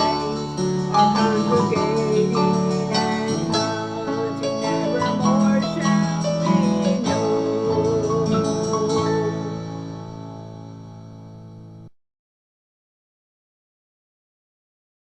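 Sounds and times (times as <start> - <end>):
held wavering melody: 0.0 - 10.3
plucked guitar: 0.0 - 11.9.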